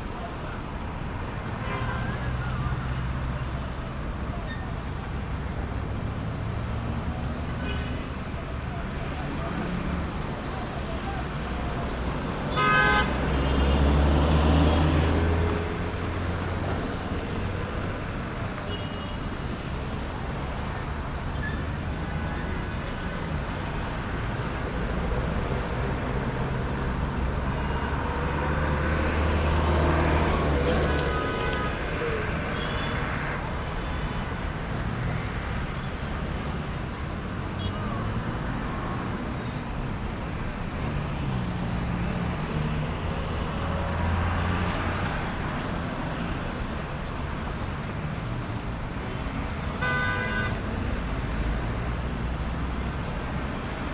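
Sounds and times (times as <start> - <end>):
heavy vehicles rumbling past: 0.0 - 53.9
road noise from passing cars: 0.0 - 53.9
car horn toot: 12.5 - 13.7, 49.8 - 50.6.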